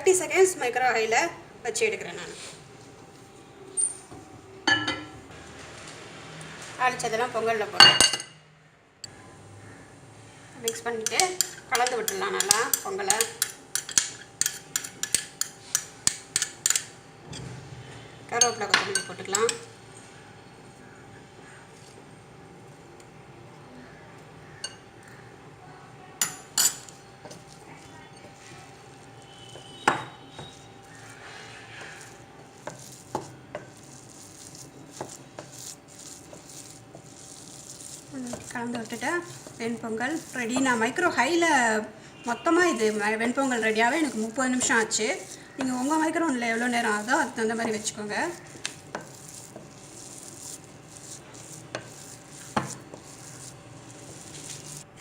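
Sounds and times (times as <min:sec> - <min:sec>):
spoon clinking against a bowl: 0:10.7 - 0:16.9
spoon scraping a dish: 0:10.7 - 0:17.5, 0:26.2 - 0:41.5, 0:42.2 - 0:54.9.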